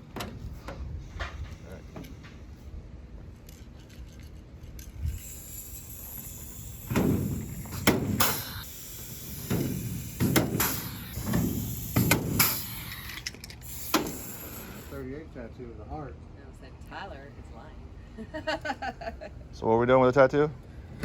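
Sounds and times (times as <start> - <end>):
rivet gun pops and air hisses: 5.1 - 14.9
high hiss of compressed air: 5.1 - 15.0.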